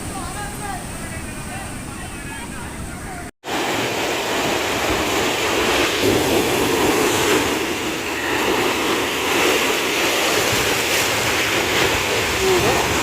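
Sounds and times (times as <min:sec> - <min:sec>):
heavy rain pouring: 0:03.2 - 0:13.0.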